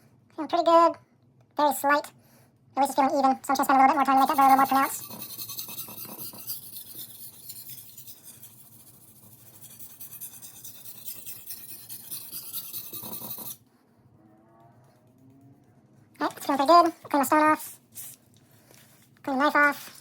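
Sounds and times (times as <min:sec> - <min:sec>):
knife scraping on whetstone: 0:04.2 - 0:13.6.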